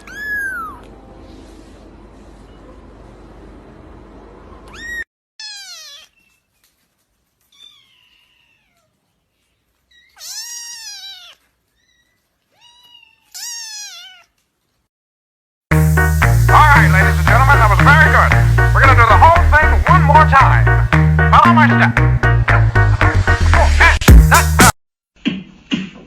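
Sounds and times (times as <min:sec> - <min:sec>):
cat meowing: 0:00.0 - 0:00.9, 0:04.6 - 0:06.5, 0:07.4 - 0:09.0, 0:09.9 - 0:14.4
loud music: 0:15.7 - 0:24.8.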